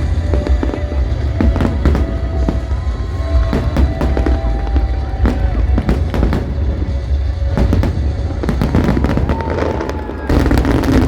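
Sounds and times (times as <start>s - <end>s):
fireworks exploding: 0.0s - 11.0s
music playing: 0.0s - 11.0s.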